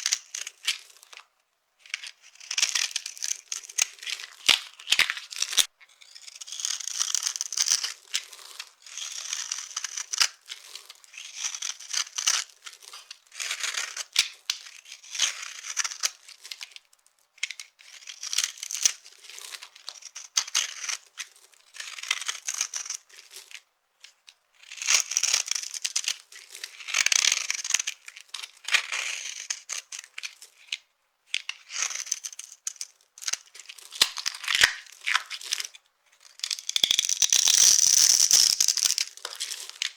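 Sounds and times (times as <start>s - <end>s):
dry soap crunching: 1.9s - 14.1s, 14.7s - 16.6s, 31.4s - 39.9s.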